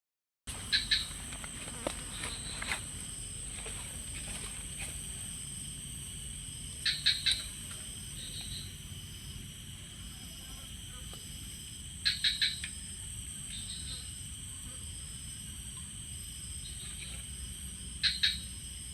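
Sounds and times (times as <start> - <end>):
crickets trilling: 0.5 - 18.9
sharp cricket chirps: 0.5 - 18.9.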